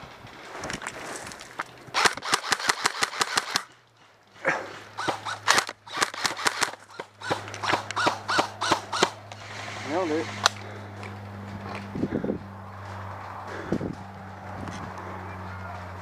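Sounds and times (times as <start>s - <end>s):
airsoft guns firing: 1.9s - 3.7s, 5.0s - 9.2s.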